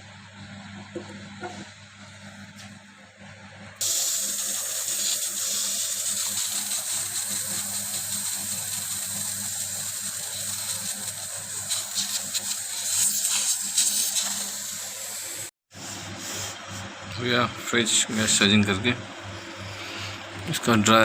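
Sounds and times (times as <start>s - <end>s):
refrigerant gas hissing: 3.8s - 17.0s.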